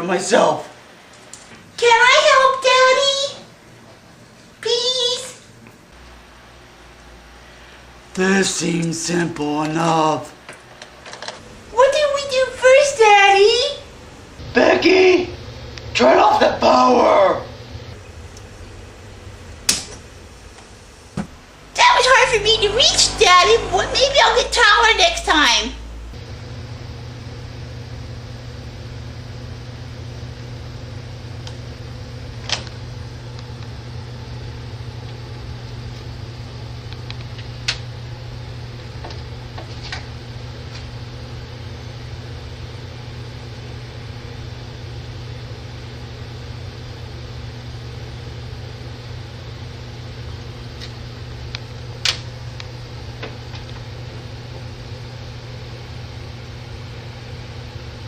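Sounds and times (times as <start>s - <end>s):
low mechanical hum: 0.0s - 58.0s.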